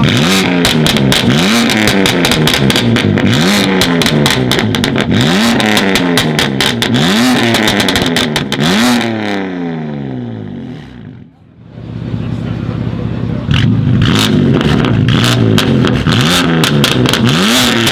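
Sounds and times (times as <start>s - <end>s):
exhaust crackles and pops: 0.0s - 9.0s, 13.5s - 17.9s
sports car engine revving: 0.0s - 17.9s.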